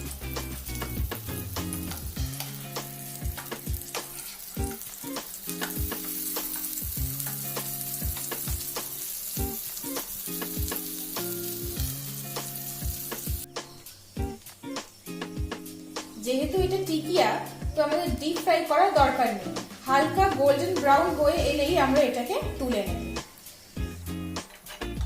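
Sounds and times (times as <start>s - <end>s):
patties sizzling in oil: 0.0s - 25.0s
soft background music: 0.0s - 25.0s
spatula clicking on pan: 1.8s - 2.6s, 5.5s - 7.4s.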